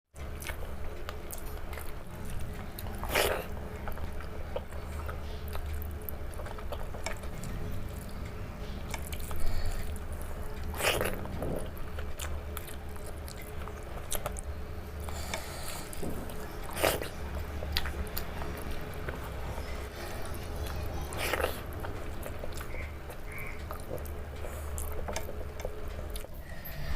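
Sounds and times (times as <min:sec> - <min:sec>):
steady low hum: 0:00.2 - 0:26.9
chewing and wet mouth clicks: 0:11.9 - 0:15.5, 0:16.3 - 0:26.4.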